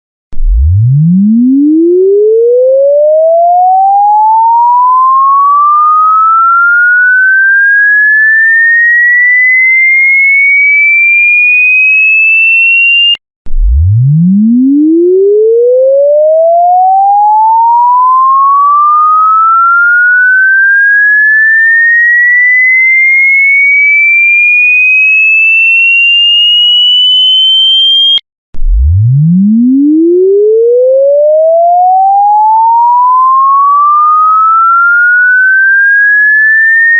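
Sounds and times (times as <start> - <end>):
rising electronic tone sweep: 0.3 - 7.6, 13.0 - 20.8, 26.5 - 36.9.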